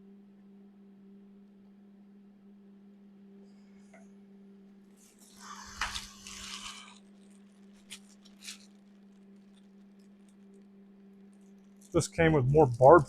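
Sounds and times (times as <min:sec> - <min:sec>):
low electrical hum: 0:00.0 - 0:13.0
rustling and clattering handling: 0:05.0 - 0:10.6.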